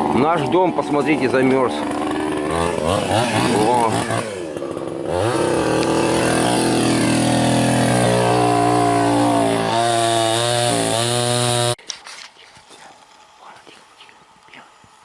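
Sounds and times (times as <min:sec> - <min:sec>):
small engine running: 0:00.0 - 0:11.8.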